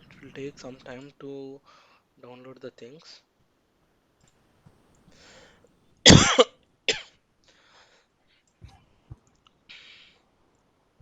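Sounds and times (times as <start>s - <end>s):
person breathing: 1.6s - 2.0s, 5.1s - 5.7s, 7.4s - 8.4s, 9.7s - 10.3s
person coughing: 6.1s - 7.1s.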